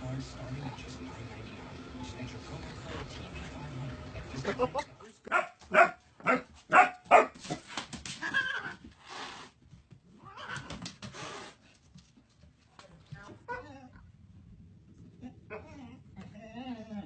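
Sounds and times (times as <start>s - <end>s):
dog barking: 5.3s - 7.6s.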